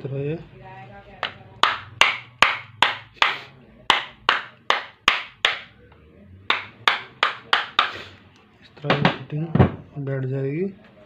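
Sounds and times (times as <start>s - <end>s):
sharp tapping knocks: 1.2s - 5.7s, 6.5s - 8.0s.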